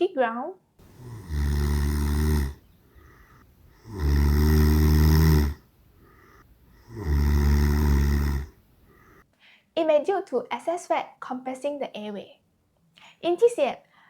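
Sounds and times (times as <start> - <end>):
loud low grunting snores: 0.8 - 9.2.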